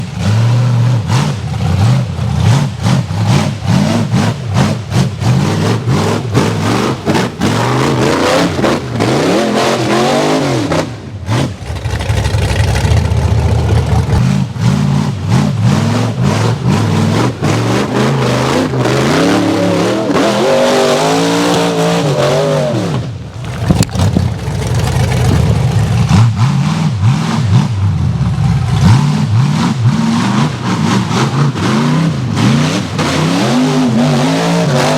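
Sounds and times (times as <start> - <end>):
engine revving hard: 0.0 - 23.2, 23.9 - 34.9.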